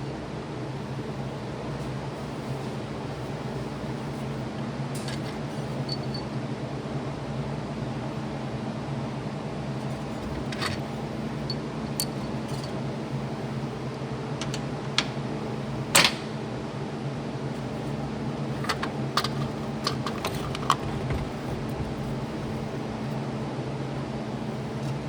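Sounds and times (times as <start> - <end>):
steady low hum: 0.0 - 25.0
short clicks and knocks: 14.4 - 15.2.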